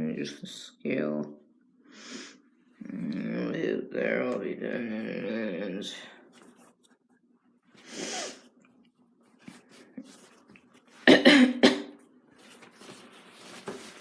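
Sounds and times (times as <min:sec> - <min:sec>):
woman coughing: 0:11.0 - 0:12.0.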